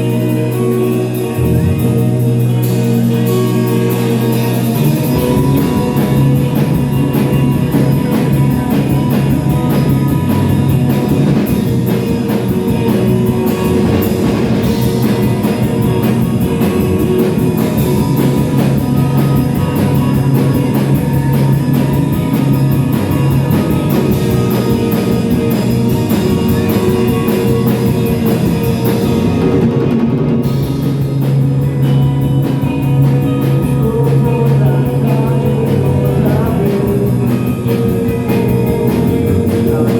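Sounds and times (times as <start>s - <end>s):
low bass note: 0.0s - 29.8s
drum kit beat: 0.0s - 39.9s
guitars: 0.0s - 39.9s.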